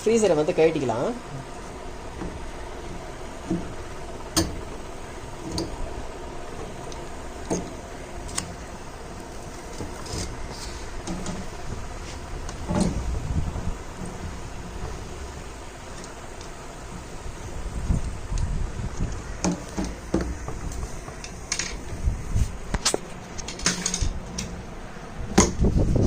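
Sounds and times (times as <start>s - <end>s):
steady low hum: 0.0s - 26.0s
clicks and knocks of tools: 18.3s - 21.8s, 22.7s - 24.6s.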